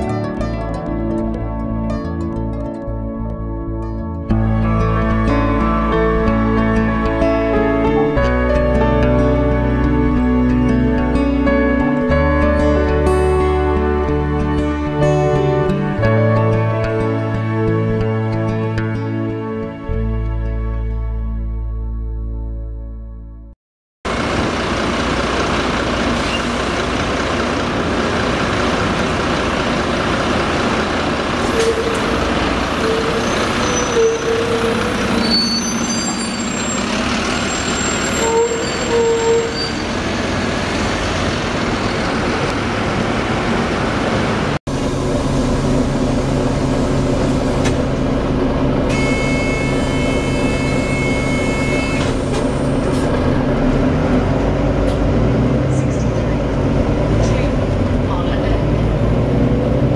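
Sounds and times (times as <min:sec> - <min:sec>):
bus drivetrain running: 0:00.0 - 0:19.4, 0:24.1 - 0:59.9
brief rising tones: 0:48.9 - 0:53.8.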